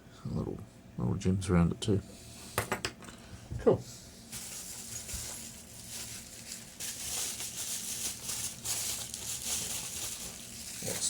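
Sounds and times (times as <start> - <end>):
packaging rustling and crinkling: 4.3 - 11.0.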